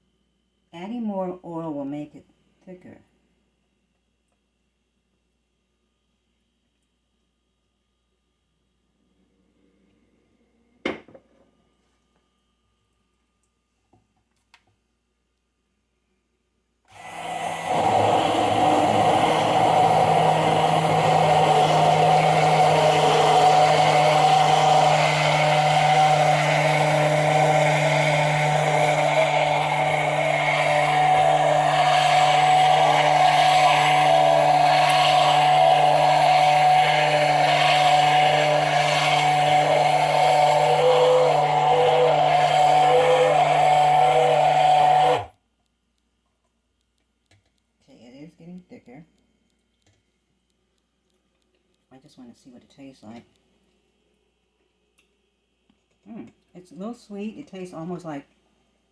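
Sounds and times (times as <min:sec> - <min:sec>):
immersion blender motor running: 0:16.9 - 0:45.3.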